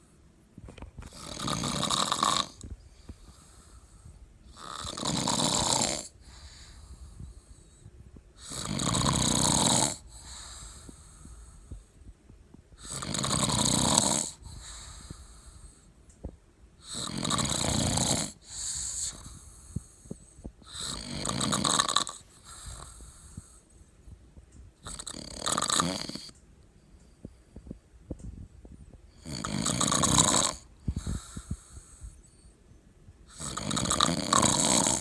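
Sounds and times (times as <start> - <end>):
quiet breathing: 0.0 - 25.4, 26.0 - 35.0
man snoring loudly: 1.1 - 2.6, 4.5 - 6.4, 8.4 - 10.7, 12.8 - 15.0, 16.8 - 19.2, 20.7 - 23.0, 24.8 - 26.3, 29.2 - 31.6, 33.3 - 35.0.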